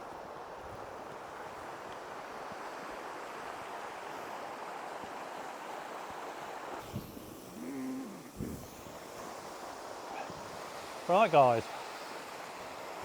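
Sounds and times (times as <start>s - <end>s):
waterfall gushing: 7.5s - 13.0s.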